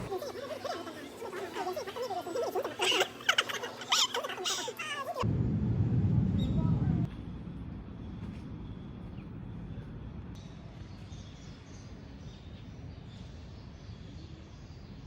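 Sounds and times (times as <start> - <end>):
low ambient rumble: 4.9 - 15.0.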